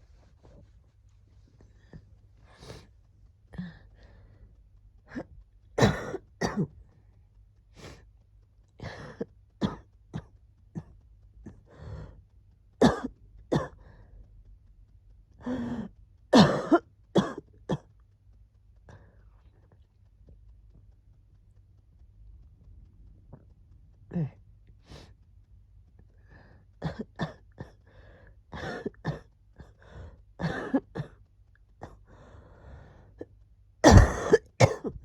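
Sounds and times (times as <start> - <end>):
person coughing: 5.1 - 6.8, 12.8 - 13.8, 16.4 - 17.9, 28.6 - 29.8, 30.4 - 31.2, 33.8 - 35.0
throat clearing: 33.8 - 35.0.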